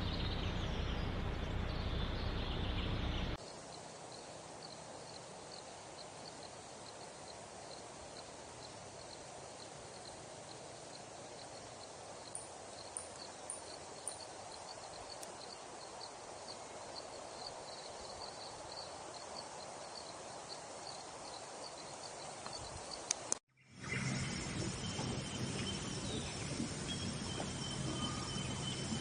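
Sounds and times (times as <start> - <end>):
low hiss of wind or surf: 3.4 - 29.0
faint high chirp: 23.6 - 29.0.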